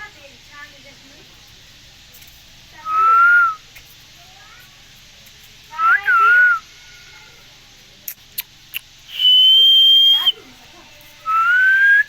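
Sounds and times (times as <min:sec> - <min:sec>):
parrot whistling: 0:09.1 - 0:10.4, 0:11.3 - 0:12.0.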